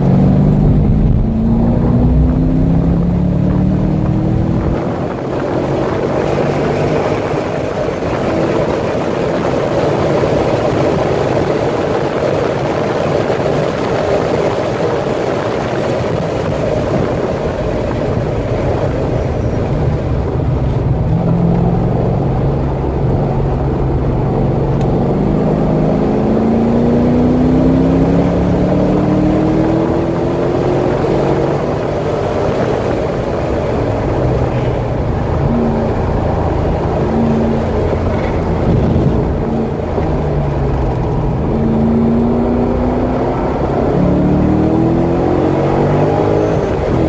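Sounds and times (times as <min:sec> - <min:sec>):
car engine accelerating: 0:00.0 - 0:47.0
wind noise: 0:00.0 - 0:47.0.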